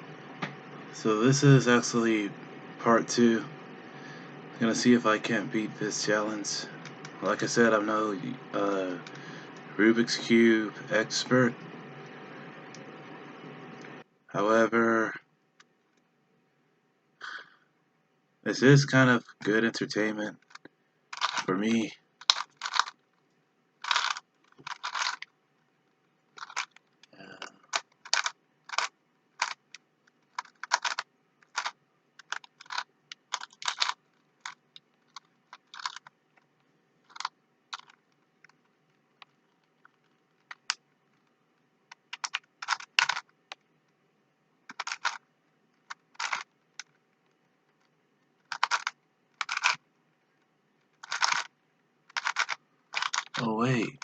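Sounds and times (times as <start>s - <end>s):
plastic puzzle cube clicking: 21.2s - 21.5s, 22.2s - 23.0s, 23.8s - 25.3s, 26.4s - 27.1s, 27.7s - 36.5s, 37.1s - 40.8s, 41.9s - 43.6s, 44.7s - 45.2s, 45.8s - 47.0s, 48.4s - 49.8s, 51.0s - 51.5s, 52.1s - 53.4s.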